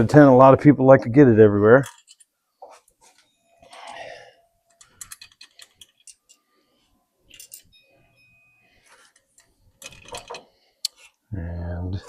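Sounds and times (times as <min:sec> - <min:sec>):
faint tool handling clicks: 0:04.7 - 0:06.4.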